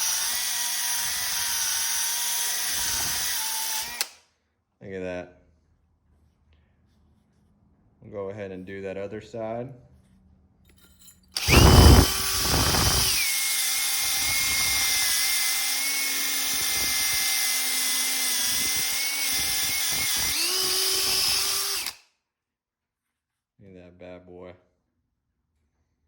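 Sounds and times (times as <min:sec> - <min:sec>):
power drill with wire brush: 0:00.0 - 0:04.2, 0:11.4 - 0:22.0.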